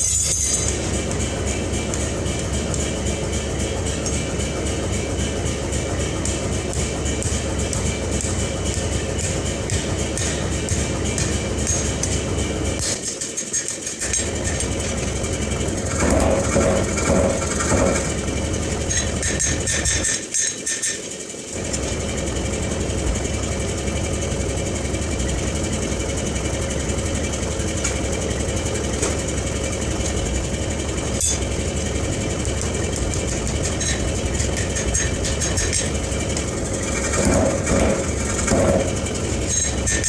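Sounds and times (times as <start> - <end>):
machinery motor drone: 0.0 - 13.1, 13.8 - 20.1, 21.4 - 40.0
rough uneven noise: 30.4 - 40.0.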